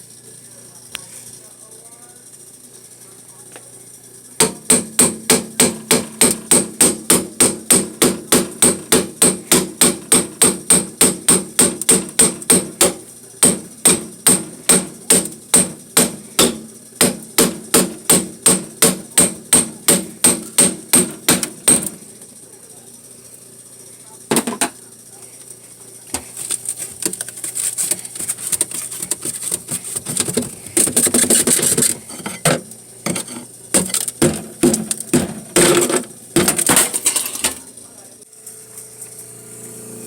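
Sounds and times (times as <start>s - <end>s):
tool chipping at ice: 4.4s - 22.0s, 26.2s - 37.6s.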